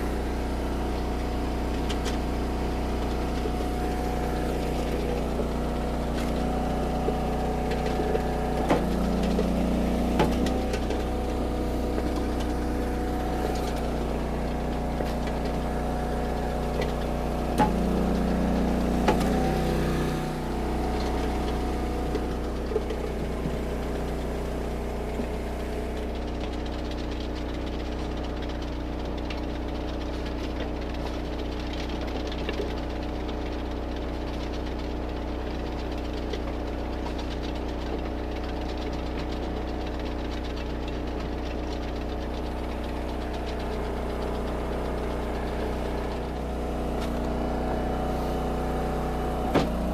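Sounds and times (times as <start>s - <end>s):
log splitter engine running: 0.0s - 49.9s
sharp cracks and knocks: 3.0s - 20.0s, 49.4s - 49.9s.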